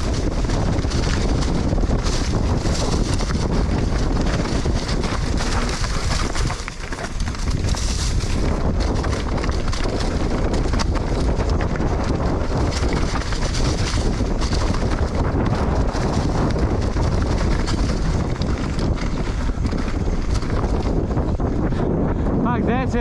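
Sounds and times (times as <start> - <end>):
bike rattling and knocking: 0.0 - 21.4
wind over microphone: 0.0 - 23.0
tyres on dirt: 4.6 - 8.4.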